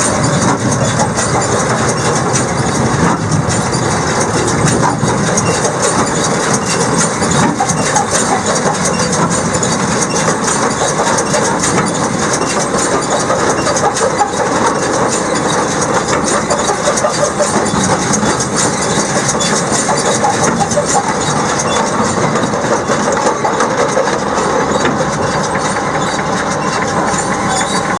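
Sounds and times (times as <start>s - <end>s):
baler clattering and rattling: 0.0s - 28.0s
tractor engine running: 0.0s - 28.0s.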